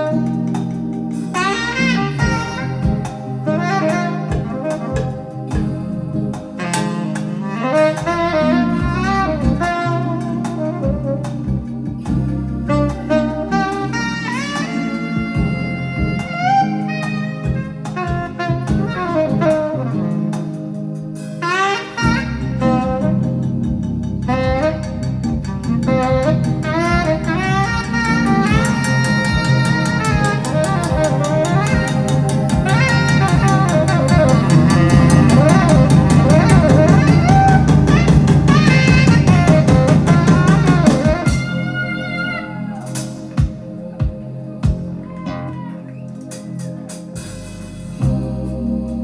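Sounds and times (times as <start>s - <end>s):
drum kit fast beat: 0.0s - 16.3s, 21.2s - 41.8s, 46.4s - 48.6s
guitar: 0.0s - 49.0s
jazz horns playing over a band: 0.0s - 49.0s
pitch-bending lead melody: 0.0s - 49.0s.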